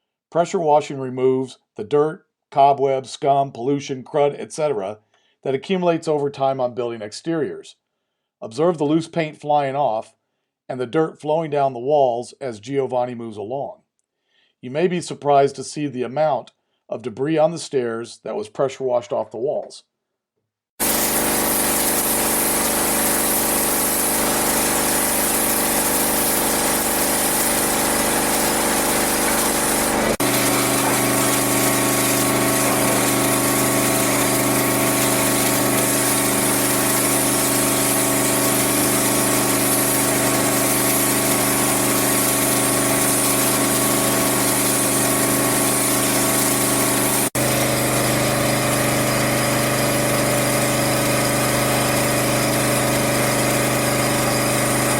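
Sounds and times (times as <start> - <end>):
pressure washer engine running: 20.8 - 54.9
water jet hissing: 20.8 - 54.9.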